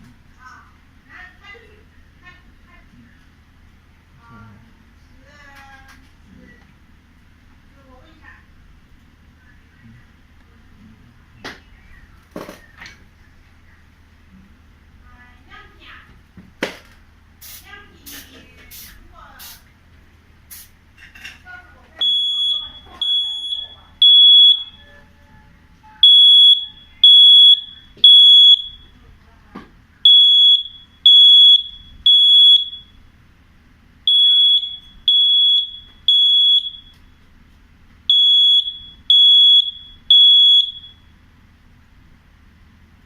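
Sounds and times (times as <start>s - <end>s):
smoke alarm beeping: 22.0s - 29.0s, 30.0s - 33.0s, 34.1s - 37.2s, 38.1s - 41.1s.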